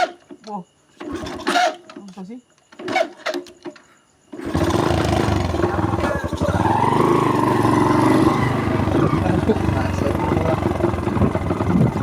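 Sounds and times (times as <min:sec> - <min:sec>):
motorcycle engine running: 0:04.4 - 0:12.0.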